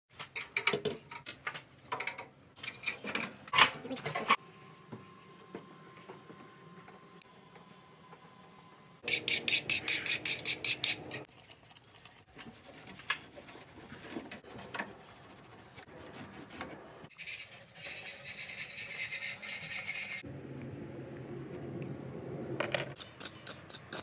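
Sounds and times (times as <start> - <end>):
continuous scraping rasp: 9.0 - 11.3, 12.3 - 20.2
fast scrubbing strokes: 17.1 - 20.2.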